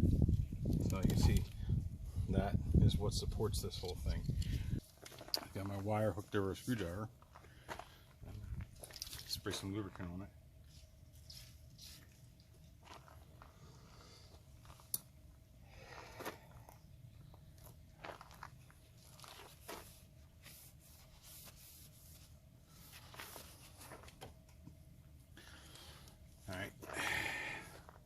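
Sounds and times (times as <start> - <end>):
wire and plastic parts handled: 4.2 - 5.8.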